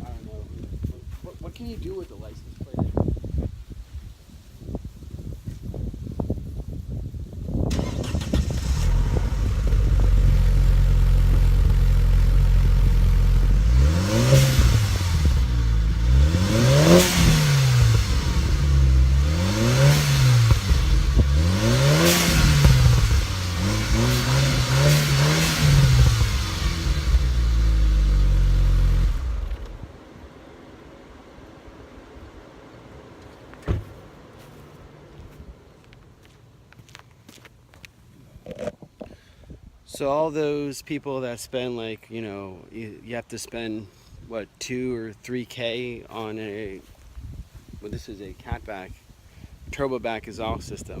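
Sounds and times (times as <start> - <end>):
car engine idling and revving: 7.7 - 36.1.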